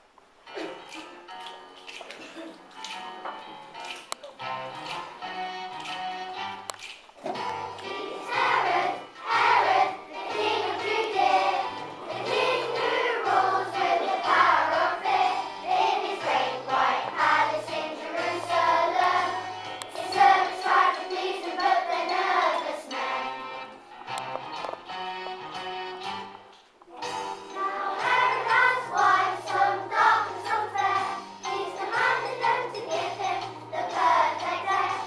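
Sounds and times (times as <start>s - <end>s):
musical accompaniment with bass: 0.4s - 35.0s
children singing in chorus: 7.9s - 23.4s, 27.5s - 35.0s.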